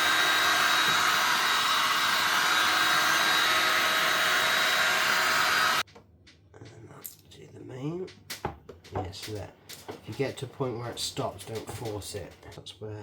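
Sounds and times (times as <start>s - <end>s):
heat gun blowing: 0.0s - 5.8s.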